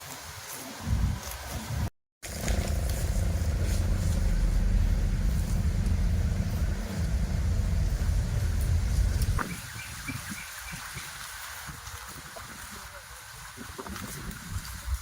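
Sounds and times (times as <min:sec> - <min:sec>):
vehicle engine rumble: 0:00.9 - 0:09.7.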